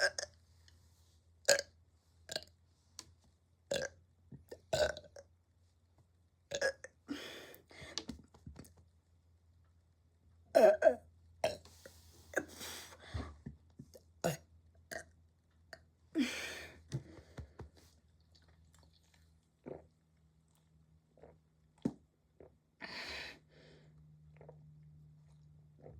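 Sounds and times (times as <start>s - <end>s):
person burping: 10.6s - 11.6s.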